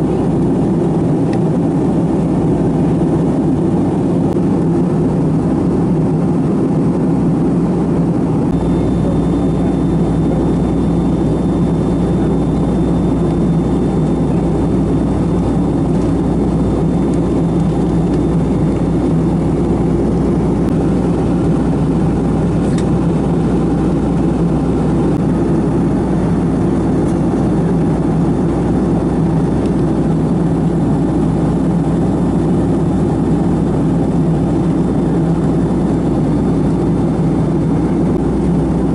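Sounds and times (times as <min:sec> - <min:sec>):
faint high whine: 0:00.0 - 0:38.9
jet engine cabin drone: 0:00.0 - 0:38.9
deep low hum: 0:07.6 - 0:27.8.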